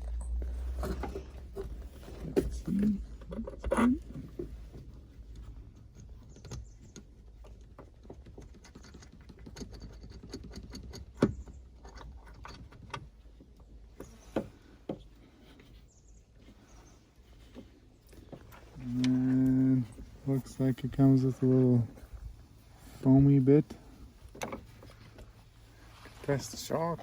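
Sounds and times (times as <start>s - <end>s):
small metal hardware clicking: 8.2s - 13.0s.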